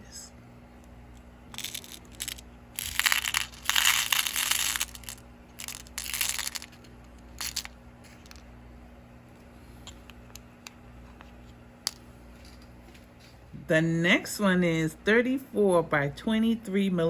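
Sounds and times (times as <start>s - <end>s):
bead packet crinkling: 1.5s - 8.4s.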